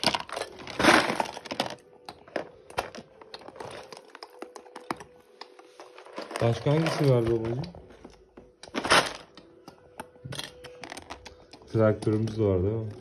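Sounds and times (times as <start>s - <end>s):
plastic toy bricks clattering: 0.0s - 4.1s.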